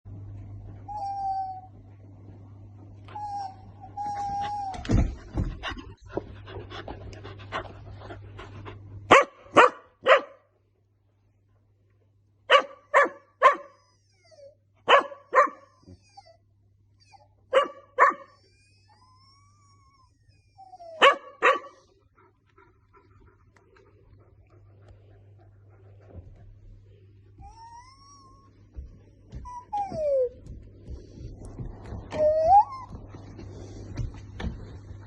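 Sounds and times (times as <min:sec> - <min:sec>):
puppy barking: 0:09.1 - 0:10.5, 0:12.5 - 0:13.8, 0:14.8 - 0:15.8, 0:17.5 - 0:18.4, 0:21.0 - 0:21.8.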